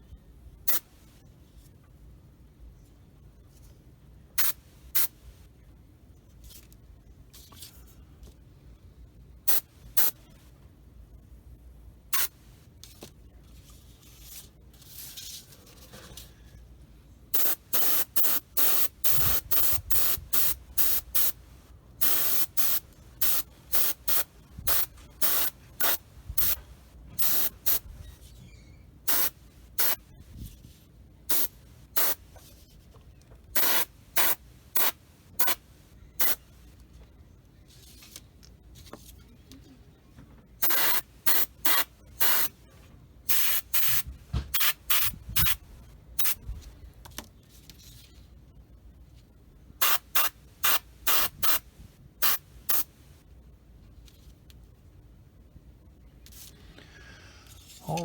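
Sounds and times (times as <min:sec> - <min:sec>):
airbrush hissing bursts: 0:17.4 - 0:21.4, 0:22.0 - 0:27.8, 0:29.1 - 0:30.0, 0:33.6 - 0:35.6, 0:36.2 - 0:36.4, 0:40.6 - 0:42.5, 0:43.3 - 0:45.6, 0:49.8 - 0:51.6, 0:52.2 - 0:52.9.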